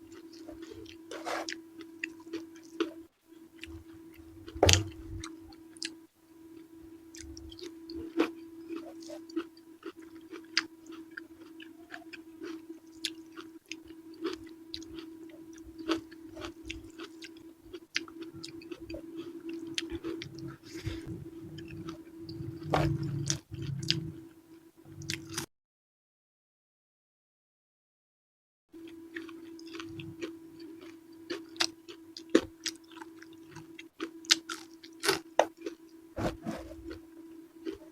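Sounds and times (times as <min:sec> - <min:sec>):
steady low hum: 0:00.0 - 0:25.5, 0:28.8 - 0:37.9
wet chewing and mouth clicks: 0:07.1 - 0:24.2.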